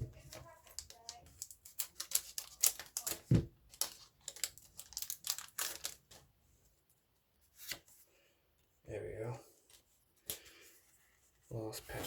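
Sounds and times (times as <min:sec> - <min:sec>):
foil wrapper crinkling and tearing: 0:00.5 - 0:06.2.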